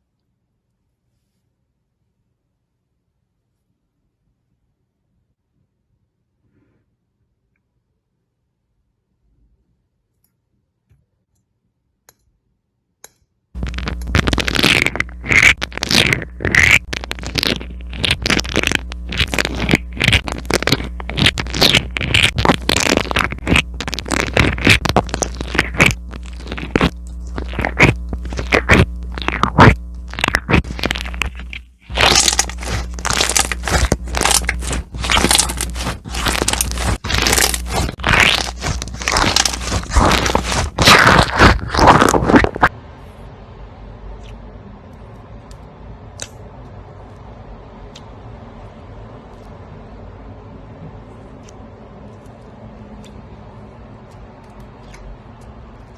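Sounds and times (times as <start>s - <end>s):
slime crackling and popping: 13.6s - 42.7s.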